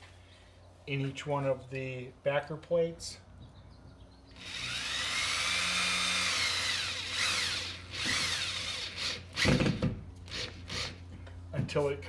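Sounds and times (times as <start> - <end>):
power drill motor whine: 4.4 - 11.0.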